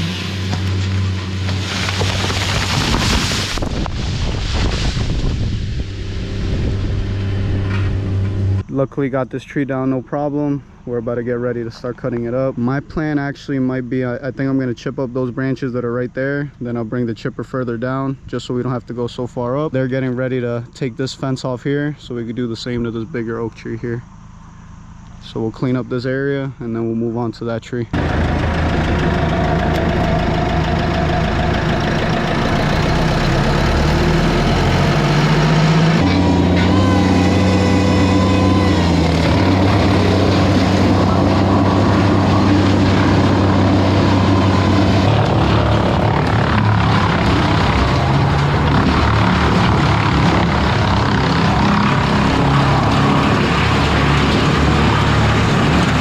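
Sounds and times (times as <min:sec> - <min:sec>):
skid steer engine running: 0:00.0 - 0:04.0, 0:05.2 - 0:08.8, 0:27.9 - 0:56.0.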